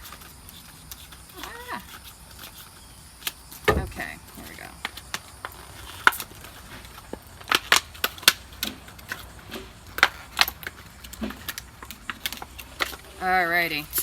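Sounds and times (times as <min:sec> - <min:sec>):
plastic packaging cracking and snapping: 0:04.8 - 0:13.0.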